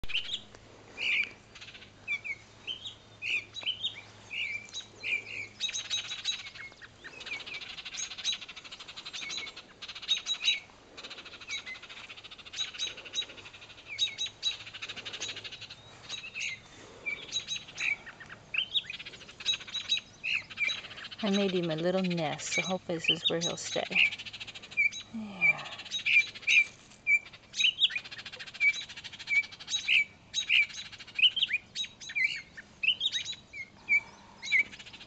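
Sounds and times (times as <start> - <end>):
harsh rattling bird chatters: 3.3 - 35.0
bird alarm chirps: 13.9 - 35.0.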